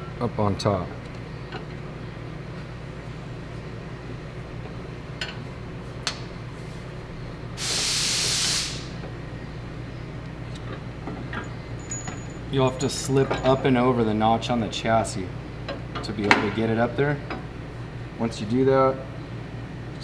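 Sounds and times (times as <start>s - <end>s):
low shop hum: 0.0s - 20.0s
compressed air hiss: 7.6s - 9.0s.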